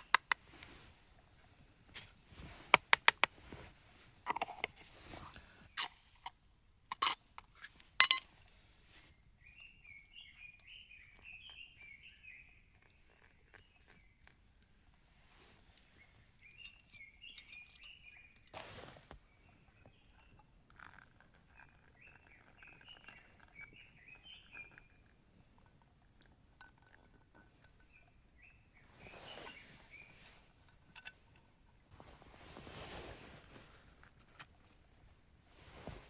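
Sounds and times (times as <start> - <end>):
faint songbird chirping: 8.9 - 14.7, 15.3 - 18.5, 19.2 - 25.6, 27.4 - 31.5
soft rustles: 18.5 - 19.4, 31.4 - 36.0.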